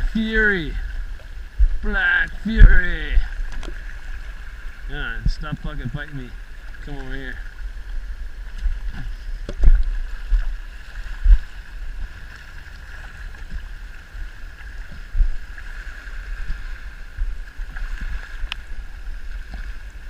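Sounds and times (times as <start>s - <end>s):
deep thumps: 8.6s - 10.5s, 11.1s - 11.6s.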